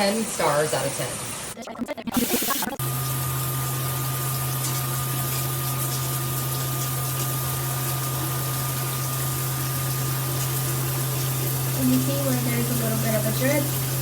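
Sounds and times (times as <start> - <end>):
shower head spraying water: 2.2 - 14.0.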